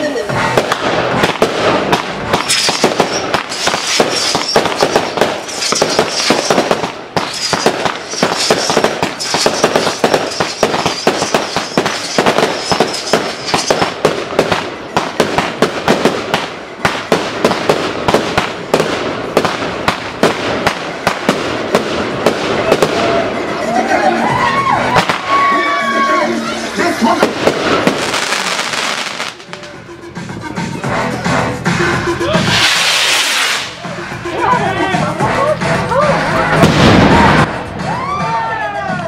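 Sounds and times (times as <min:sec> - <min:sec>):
fireworks bangs and crackles: 0:00.0 - 0:25.8, 0:26.7 - 0:29.9, 0:32.4 - 0:38.1
high crackling hiss: 0:32.5 - 0:33.8.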